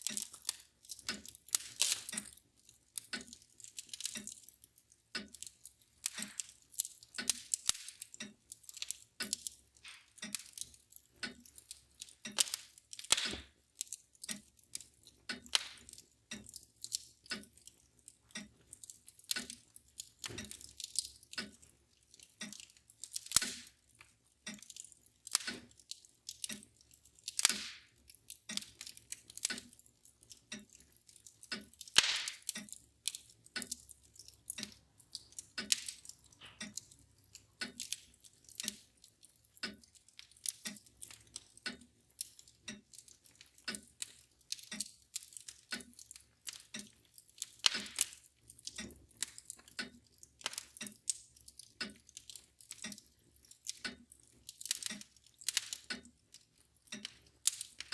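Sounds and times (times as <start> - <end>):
clock ticking: 0.0 - 57.9
wood fire crackling and popping: 0.0 - 57.9.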